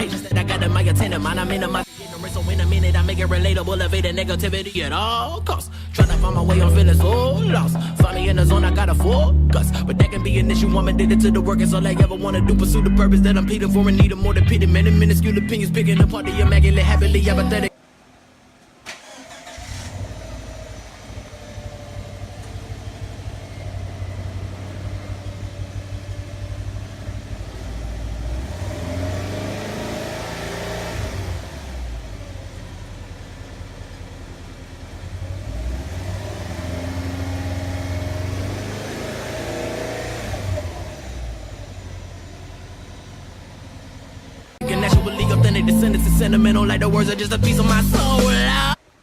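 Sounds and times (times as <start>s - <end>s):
car exhaust note: 20.0s - 48.7s.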